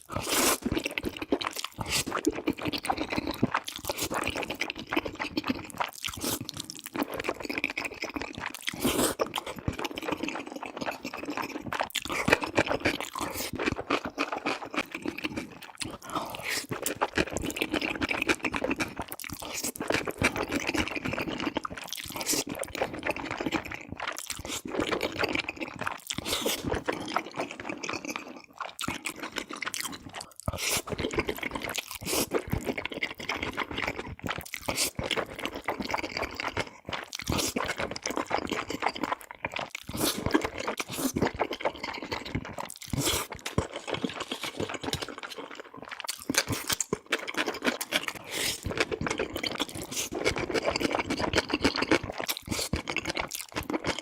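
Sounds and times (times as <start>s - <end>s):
person chewing noodles: 0.0s - 54.0s.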